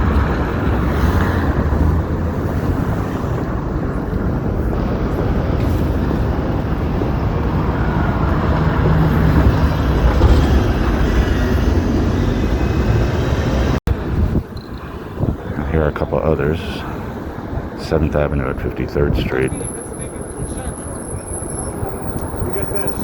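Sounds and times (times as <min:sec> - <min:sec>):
low traffic rumble: 0:00.0 - 0:23.0.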